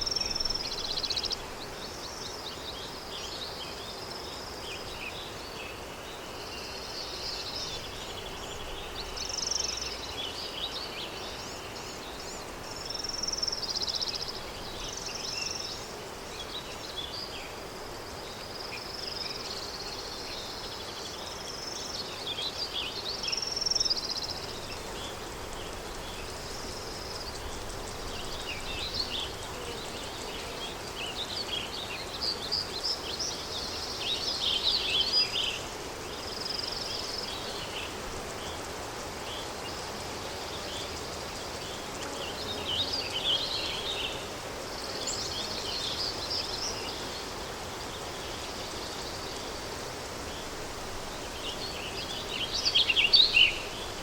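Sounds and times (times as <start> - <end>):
wind hiss: 0.0 - 54.0
small birds chirping and trilling: 18.2 - 54.0.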